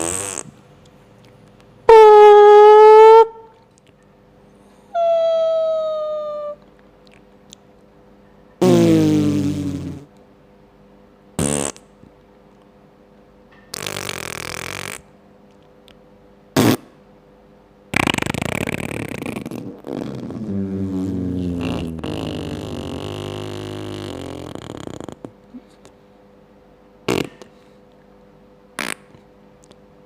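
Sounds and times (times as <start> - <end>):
fart sound effects: 0.0 - 0.6, 1.9 - 3.3, 8.6 - 10.1, 11.4 - 11.9, 13.7 - 15.1, 16.6 - 17.0, 17.9 - 25.3, 27.1 - 27.5, 28.8 - 29.2.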